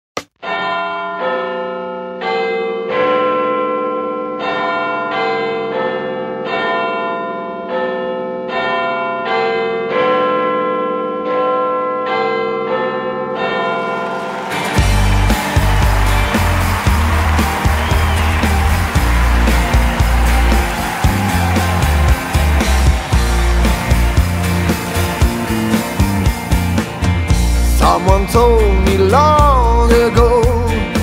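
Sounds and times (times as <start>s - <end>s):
bell-like chime melody: 12.0s - 28.0s
held chord: 13.8s - 31.0s
band with drums and bass: 14.4s - 31.0s.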